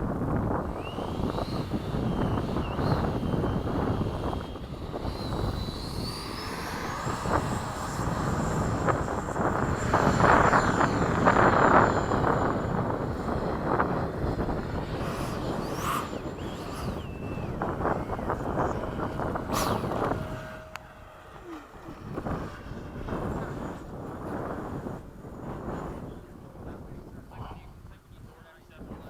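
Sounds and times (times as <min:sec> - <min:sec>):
electric ducted fan whining: 0:00.0 - 0:29.0.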